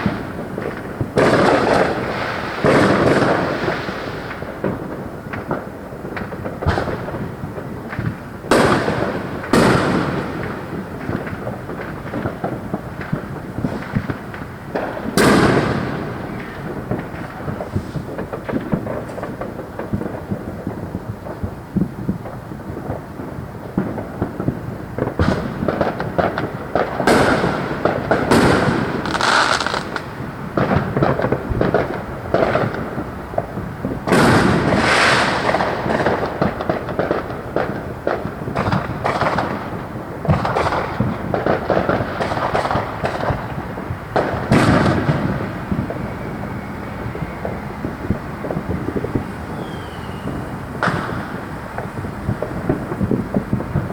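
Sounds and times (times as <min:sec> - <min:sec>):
fireworks crackling and popping: 0:00.0 - 0:53.9
loud firework bangs: 0:00.0 - 0:53.9.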